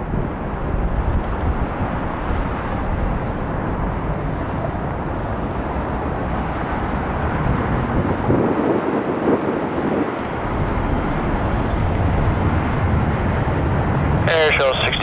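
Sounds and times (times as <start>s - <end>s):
jet engines rumbling: 0.0s - 15.0s
wind buffeting microphone: 0.0s - 15.0s.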